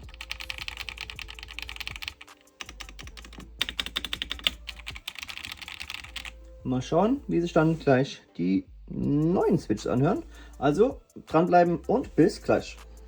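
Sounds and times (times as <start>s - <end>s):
mechanical keyboard typing: 0.0s - 6.4s.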